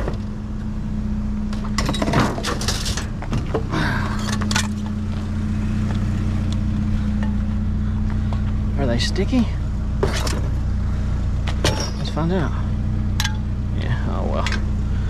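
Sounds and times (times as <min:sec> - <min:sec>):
vehicle engine idling: 0:00.0 - 0:15.0
metal scrap clattering: 0:01.8 - 0:03.1, 0:11.6 - 0:12.2.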